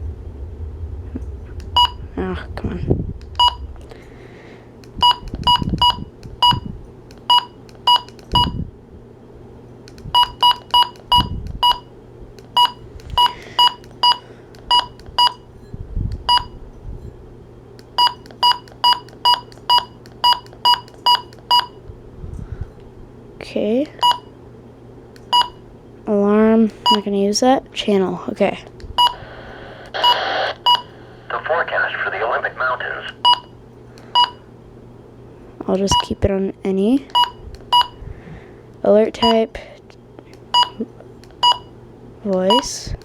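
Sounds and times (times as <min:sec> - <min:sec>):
radio key beeps: 0:29.0 - 0:33.5.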